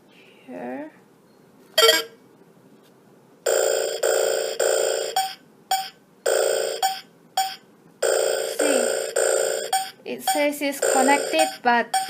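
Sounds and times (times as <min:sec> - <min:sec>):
electronic ringtone melody: 0:01.8 - 0:02.2, 0:03.5 - 0:12.0.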